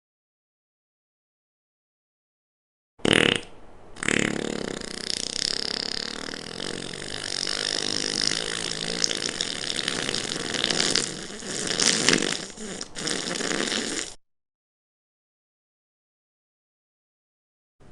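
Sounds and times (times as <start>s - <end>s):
wet fart sounds: 3.0s - 14.2s.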